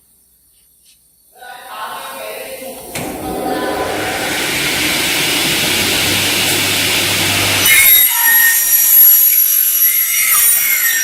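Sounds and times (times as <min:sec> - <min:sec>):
saw screeching through metal: 0:07.3 - 0:11.0.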